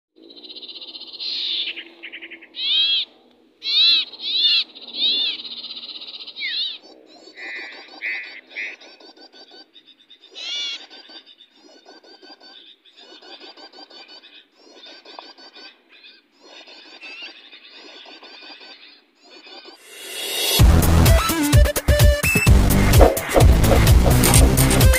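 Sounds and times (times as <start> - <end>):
rapid bird trills: 0.2 - 20.6, 22.2 - 24.9
small birds chirping: 0.2 - 20.6, 22.1 - 24.9.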